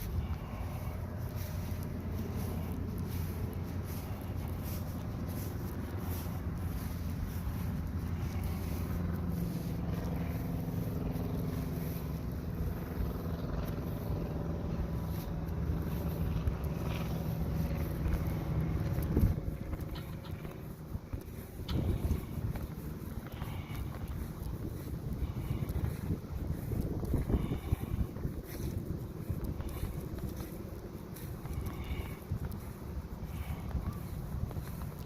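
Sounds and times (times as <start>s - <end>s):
low engine-like hum: 0.0s - 35.0s.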